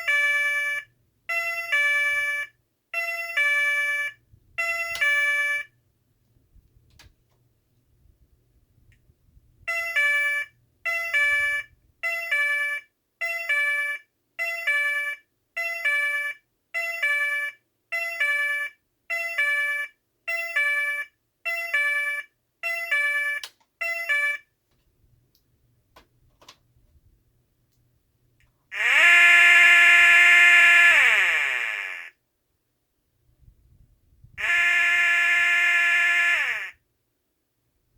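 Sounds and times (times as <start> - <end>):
pulsed two-tone electronic alarm: 28.8 - 32.1, 34.4 - 36.8.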